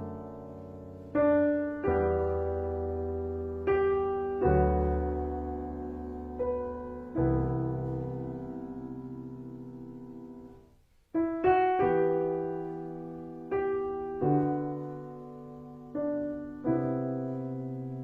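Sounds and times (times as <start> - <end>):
gentle piano chords: 0.0 - 18.0.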